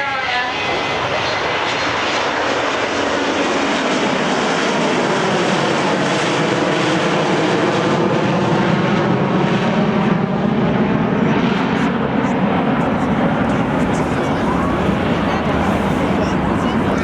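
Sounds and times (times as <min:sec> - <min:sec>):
jet airliner roar flying past: 0:00.0 - 0:17.0.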